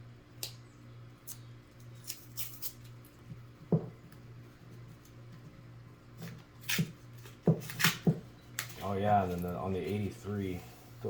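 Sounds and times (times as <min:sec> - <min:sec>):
dull knock: 0:03.7 - 0:04.0.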